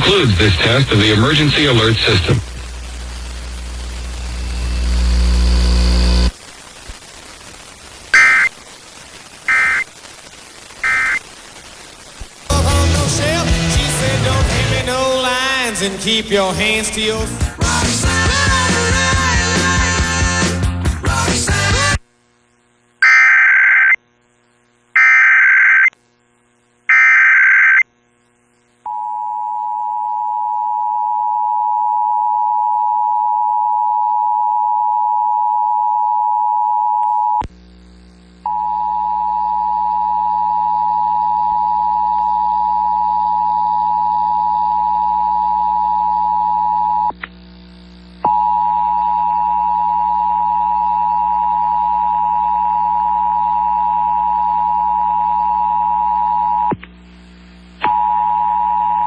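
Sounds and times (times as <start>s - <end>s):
low hum: 0.1s - 6.4s
data tone bursts: 8.1s - 8.6s, 9.4s - 10.0s, 10.6s - 11.4s, 23.0s - 24.0s, 25.0s - 25.9s, 26.9s - 27.9s.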